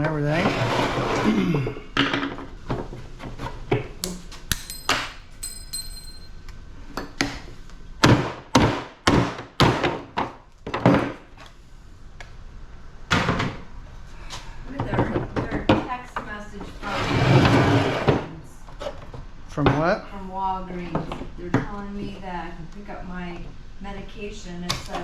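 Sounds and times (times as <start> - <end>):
hand tools knocking on metal: 4.5 - 6.4
metallic ring: 4.5 - 6.5.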